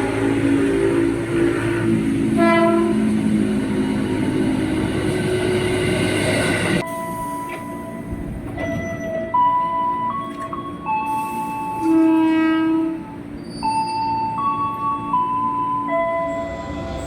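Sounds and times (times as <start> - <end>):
train horn blast: 0.0 - 3.4, 11.8 - 13.2
train running on rails: 0.0 - 17.0.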